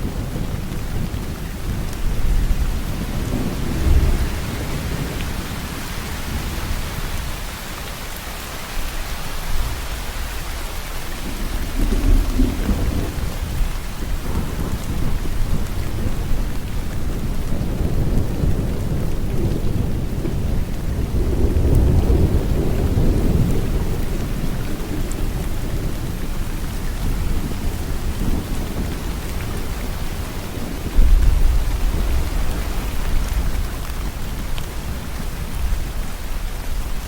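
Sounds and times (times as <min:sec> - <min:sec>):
low rolling thunder: 0:00.0 - 0:07.6, 0:09.4 - 0:37.0
heavy rain: 0:00.0 - 0:37.0.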